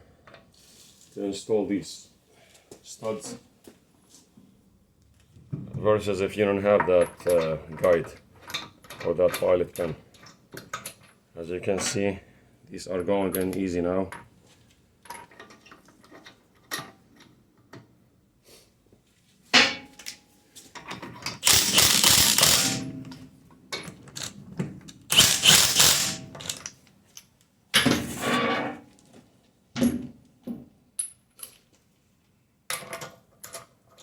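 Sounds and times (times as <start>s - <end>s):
metallic clicks of bolts and tools: 21.3s - 23.2s, 23.8s - 27.3s
power tool running bolts in: 21.4s - 23.0s, 25.1s - 26.6s.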